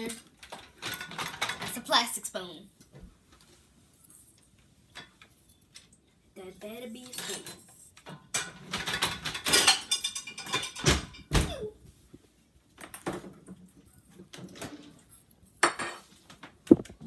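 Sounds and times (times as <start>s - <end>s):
metal cutlery clattering: 0.0s - 1.8s, 7.0s - 11.3s.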